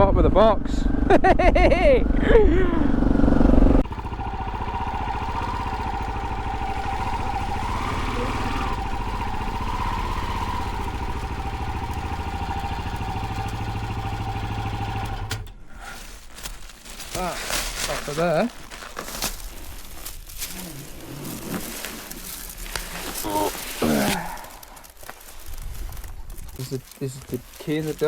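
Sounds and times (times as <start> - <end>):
motorcycle engine running: 2.0 - 15.6.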